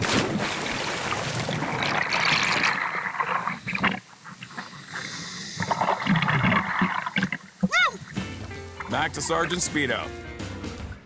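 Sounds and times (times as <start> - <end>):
water rushing down rock slide: 0.0 - 8.3.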